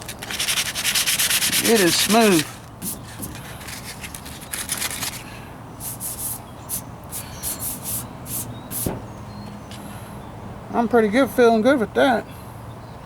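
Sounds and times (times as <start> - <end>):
sandpaper scratching strokes: 0.0 - 5.2, 5.8 - 8.9.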